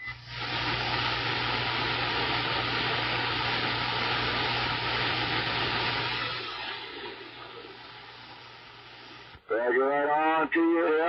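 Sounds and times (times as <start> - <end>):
radio static hiss: 0.0 - 11.0.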